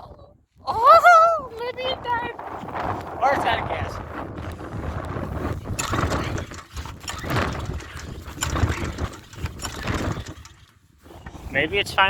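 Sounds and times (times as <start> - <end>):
small engine sputtering: 5.5 - 11.4.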